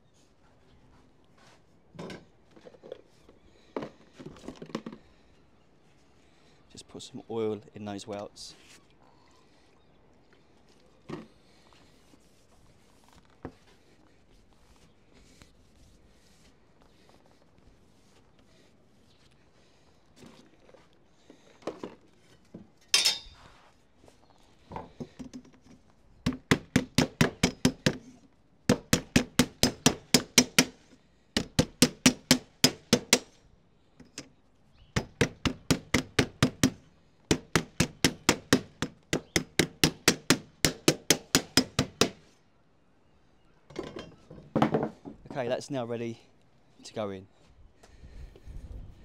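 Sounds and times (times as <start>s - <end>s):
handling clinks: 22.9s - 23.4s.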